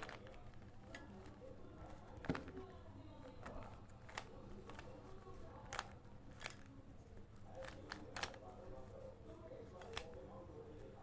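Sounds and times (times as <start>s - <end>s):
puzzle cube plastic clicks: 3.4s - 6.7s, 7.6s - 8.4s.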